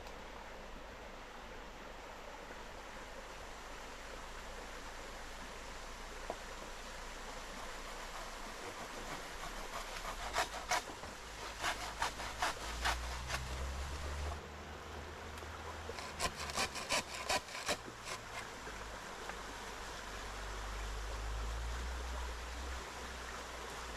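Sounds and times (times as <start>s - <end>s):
saw cutting wood: 7.6s - 14.4s, 15.9s - 18.5s.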